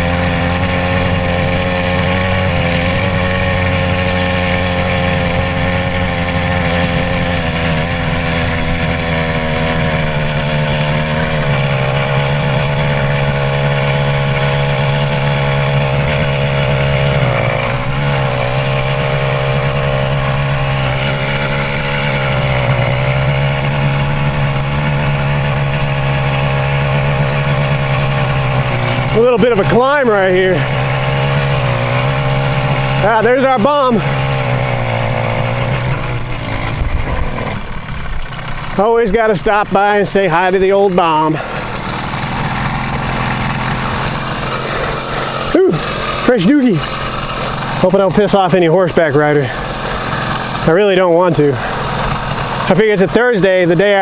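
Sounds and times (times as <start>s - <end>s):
two-stroke engine running: 0.0s - 54.0s.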